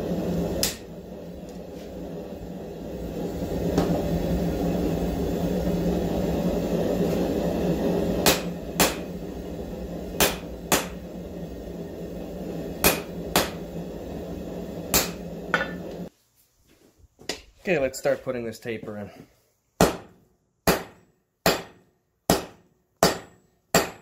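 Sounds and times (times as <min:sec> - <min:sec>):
hammer striking steel on anvil: 0:00.6 - 0:00.9, 0:08.2 - 0:09.1, 0:10.2 - 0:11.0, 0:12.8 - 0:13.6, 0:14.9 - 0:16.0, 0:19.8 - 0:24.0.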